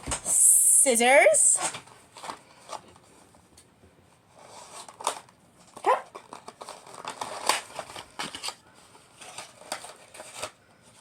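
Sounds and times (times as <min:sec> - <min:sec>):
toy packaging crinkling and snapping: 0:01.6 - 0:02.9, 0:04.4 - 0:11.0.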